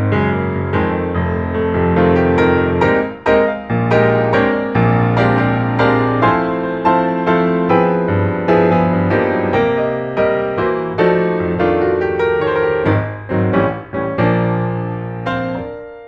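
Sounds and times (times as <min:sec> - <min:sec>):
gentle piano melody: 0:00.0 - 0:16.0.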